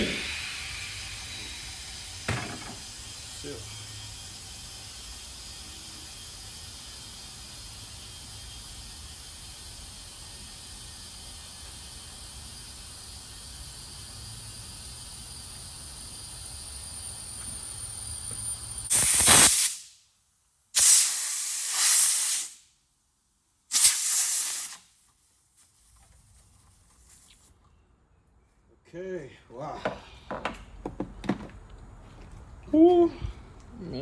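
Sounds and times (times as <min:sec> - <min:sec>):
loud air blasts: 0:00.0 - 0:05.6, 0:18.8 - 0:20.0, 0:20.8 - 0:22.7, 0:23.7 - 0:25.0
compressed air hissing: 0:00.0 - 0:20.0, 0:20.8 - 0:22.7, 0:23.7 - 0:27.5.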